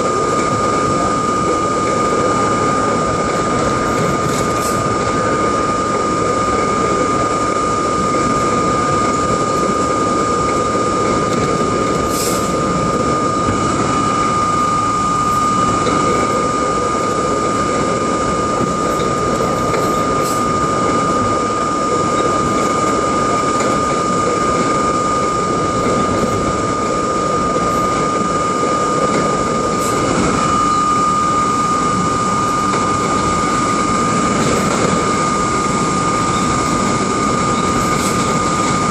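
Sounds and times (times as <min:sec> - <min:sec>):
high whine: 0:00.0 - 0:38.9
train wheels and motors rumbling: 0:00.0 - 0:38.9.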